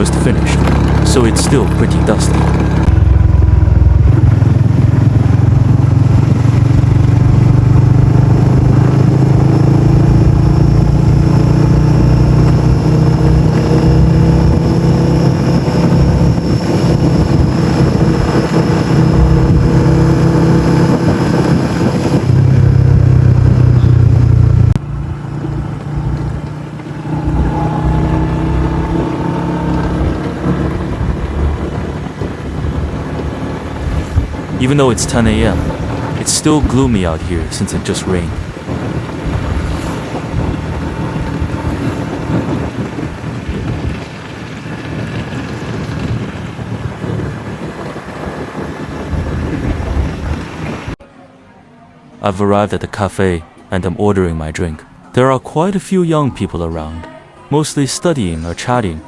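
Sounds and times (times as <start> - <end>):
motorbike engine: 0.0 - 51.0
wind and road noise: 0.0 - 51.0.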